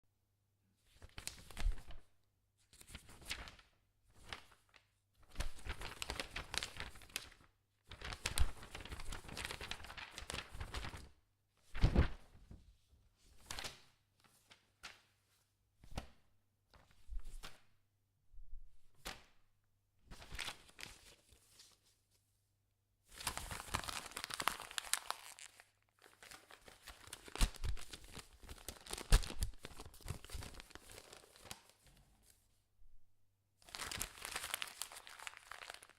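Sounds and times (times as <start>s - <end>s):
paper crumpling and tearing: 8.0s - 11.0s, 23.2s - 31.9s, 33.7s - 35.9s.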